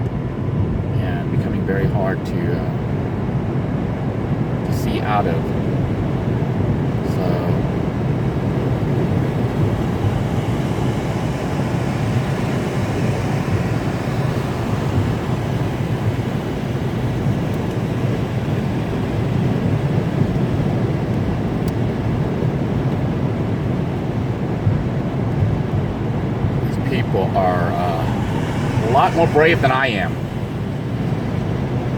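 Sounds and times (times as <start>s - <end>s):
road and wind noise in car: 0.0s - 31.9s
defroster fan running: 4.6s - 31.9s.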